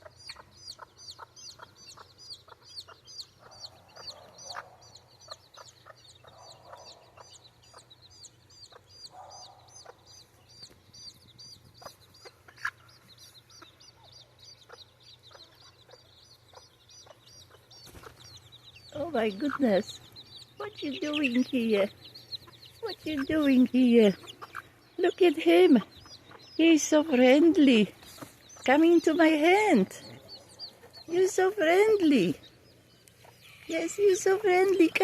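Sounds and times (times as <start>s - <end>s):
hen clucking softly: 0.0s - 10.8s, 11.7s - 28.8s
baby chicks peeping: 0.0s - 35.0s.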